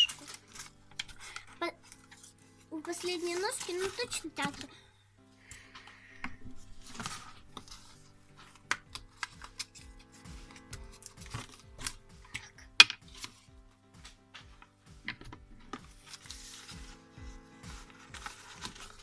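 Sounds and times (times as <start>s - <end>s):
background music: 0.0s - 19.0s
paper clicks and taps: 6.9s - 19.0s.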